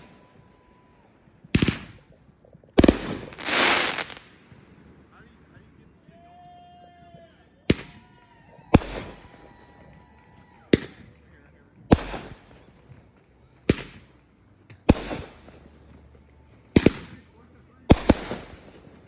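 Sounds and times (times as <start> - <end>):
fireworks bangs with crackling: 1.5 - 4.5, 8.7 - 9.5, 11.8 - 12.8, 13.7 - 14.1, 14.9 - 15.7, 16.7 - 17.2, 17.9 - 19.0.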